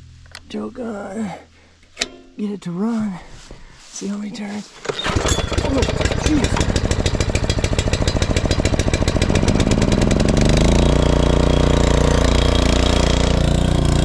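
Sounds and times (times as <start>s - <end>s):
brush mower engine running: 4.1s - 14.0s.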